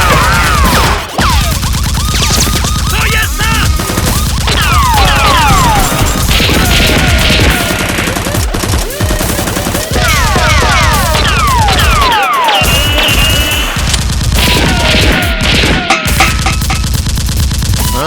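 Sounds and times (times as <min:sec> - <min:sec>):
falling whistling tones: 0:11.8 - 0:13.8.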